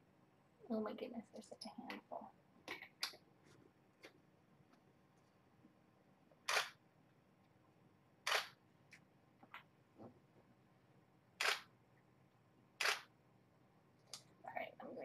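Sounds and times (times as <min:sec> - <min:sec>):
camera shutter firing: 0:06.5 - 0:06.8, 0:08.3 - 0:08.6, 0:11.4 - 0:11.7, 0:12.8 - 0:13.1.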